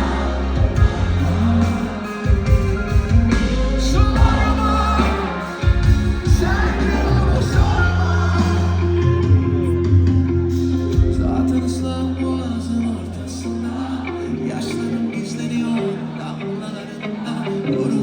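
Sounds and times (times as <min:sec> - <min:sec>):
heavy bass line: 0:00.0 - 0:12.2
pop-rock band with singing: 0:00.0 - 0:18.0.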